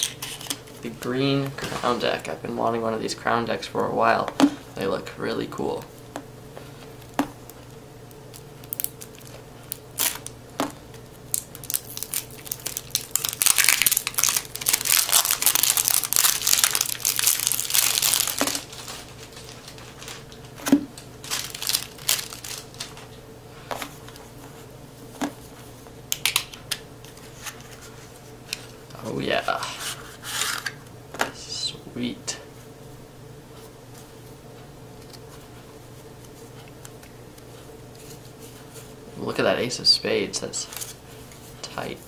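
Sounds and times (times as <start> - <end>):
cellophane wrapper crinkling: 7.1 - 20.6, 21.2 - 23.1.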